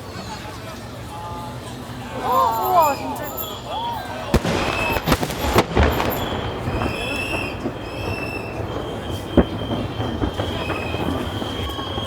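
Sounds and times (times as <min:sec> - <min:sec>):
whistling firework shells: 0:02.9 - 0:12.0
firework bangs: 0:04.3 - 0:12.0.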